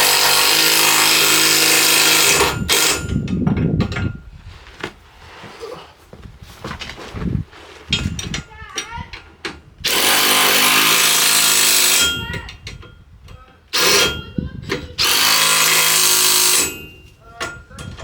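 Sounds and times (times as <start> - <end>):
power tool tightening bolts: 0.0 - 3.4, 8.2 - 12.9, 13.7 - 17.0.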